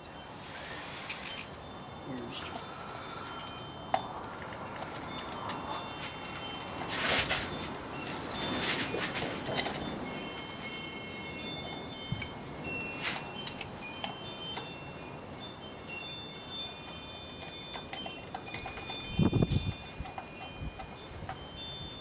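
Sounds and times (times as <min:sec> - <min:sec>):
wind chimes ringing: 0:00.0 - 0:22.0.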